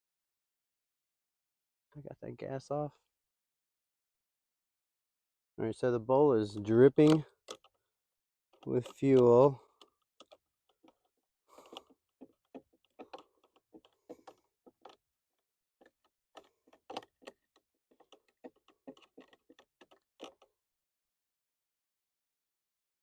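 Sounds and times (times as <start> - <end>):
small parts clicking and tapping: 6.6 - 7.8, 8.6 - 20.5.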